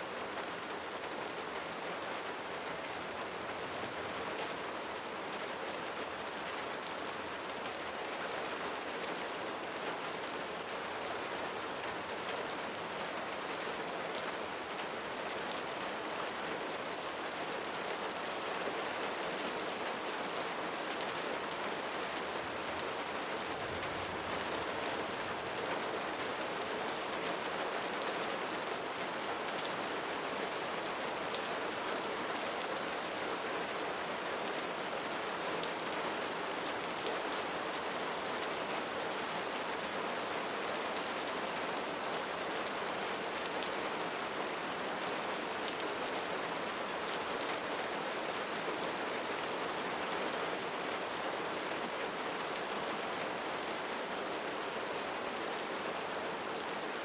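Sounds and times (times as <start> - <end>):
rain falling on leaves: 0.0 - 57.0.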